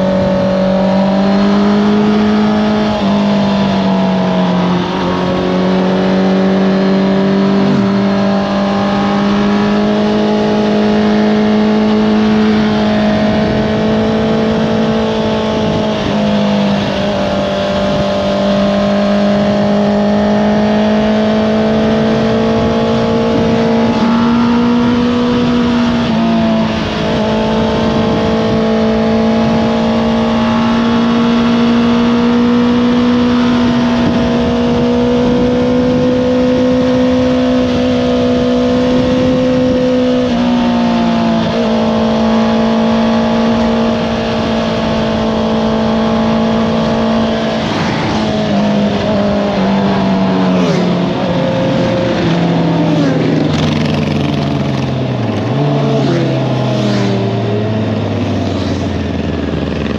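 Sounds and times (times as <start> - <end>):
motorcycle engine at high revs: 0.0 - 59.9.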